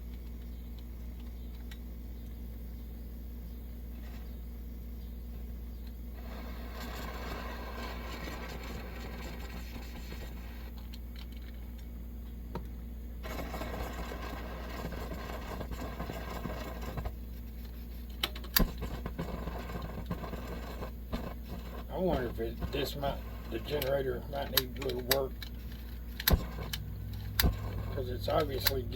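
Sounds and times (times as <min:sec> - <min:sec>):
stove burner rushing: 0:06.1 - 0:11.0, 0:13.2 - 0:28.9.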